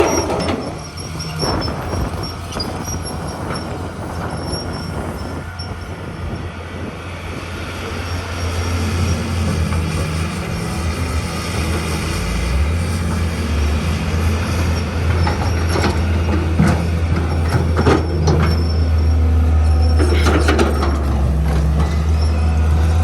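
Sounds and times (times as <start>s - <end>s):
diesel machinery droning: 0.0s - 23.0s
high squeak: 18.3s - 19.1s.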